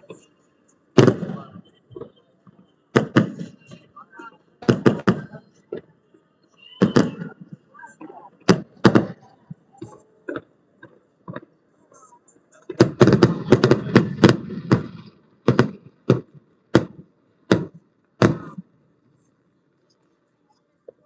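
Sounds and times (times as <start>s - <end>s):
fireworks bangs: 0.9s - 5.9s, 6.6s - 11.5s, 12.5s - 18.7s.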